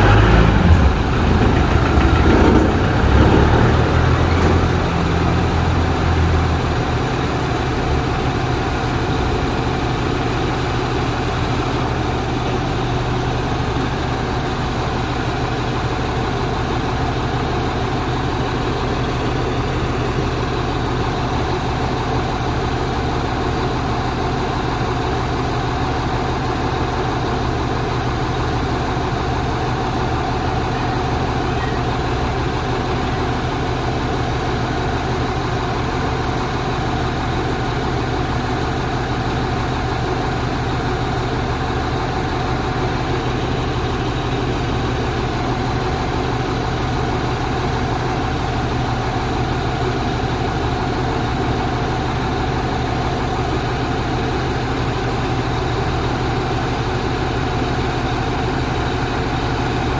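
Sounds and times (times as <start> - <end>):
truck engine running: 0.0 - 59.9.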